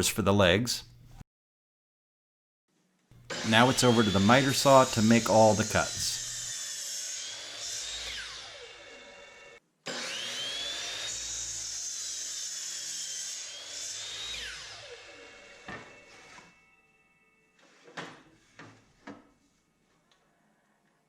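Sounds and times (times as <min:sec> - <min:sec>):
saw cutting lumber: 0:03.2 - 0:16.7
miter saw whine: 0:03.2 - 0:17.5.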